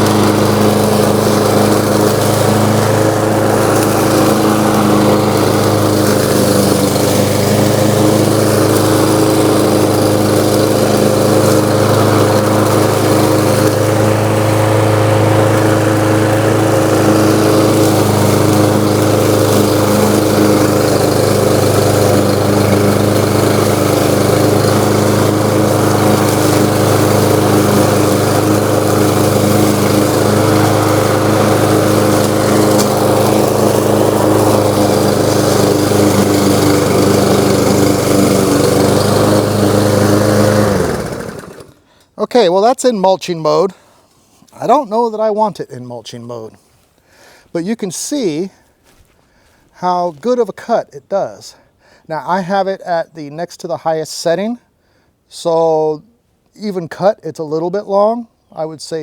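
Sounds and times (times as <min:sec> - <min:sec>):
lawn mower engine running: 0:00.0 - 0:42.8.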